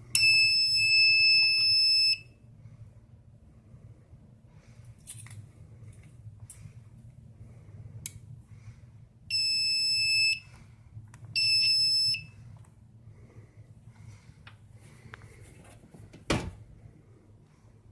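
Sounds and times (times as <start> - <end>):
fire alarm high-pitched beeps: 0.1 - 2.4, 9.3 - 10.5, 11.4 - 12.4.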